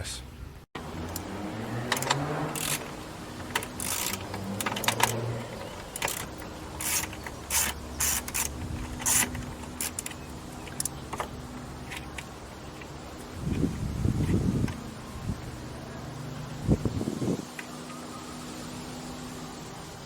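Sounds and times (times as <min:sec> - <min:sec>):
hand tools clicking and knocking: 0:00.8 - 0:13.3.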